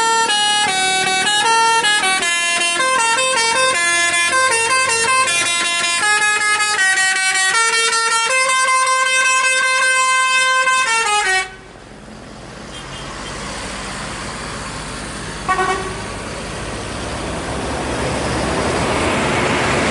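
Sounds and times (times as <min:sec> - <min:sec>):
vehicle noise: 0:00.0 - 0:19.9
musical air horn tune: 0:15.5 - 0:16.0
short horn toot: 0:15.5 - 0:16.0.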